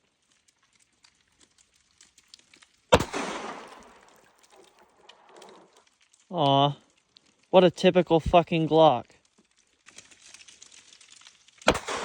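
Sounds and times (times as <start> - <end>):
pistol shot: 2.9 - 4.3, 11.6 - 12.0.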